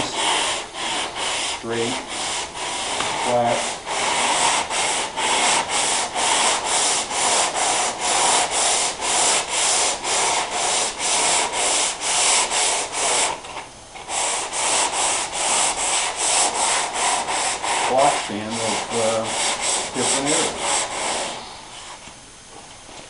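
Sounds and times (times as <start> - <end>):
sandpaper rasping on metal: 0.0 - 13.4, 14.1 - 22.0.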